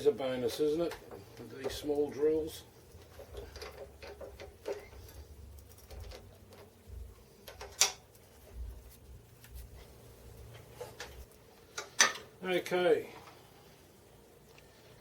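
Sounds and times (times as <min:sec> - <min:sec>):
faint low hum: 0:00.0 - 0:15.0
small metal parts clicking: 0:03.0 - 0:06.7.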